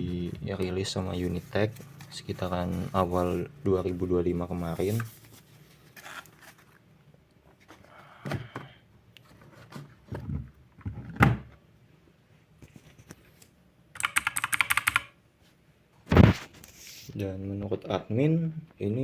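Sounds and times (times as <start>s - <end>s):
rapid keyboard clicking: 14.0s - 15.2s.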